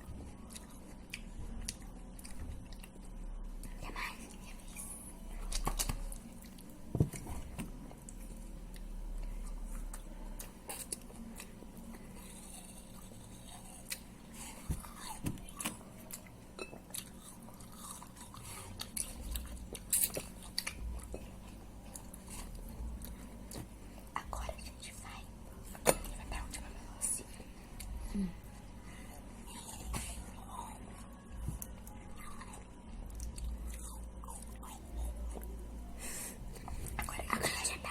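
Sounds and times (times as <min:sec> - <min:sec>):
chewing crunchy food: 0:00.0 - 0:28.0.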